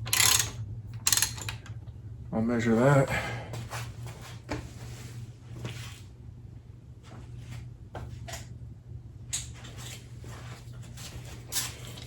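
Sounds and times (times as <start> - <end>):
small parts clicking and tapping: 0.0 - 1.8
steady low hum: 0.0 - 12.0.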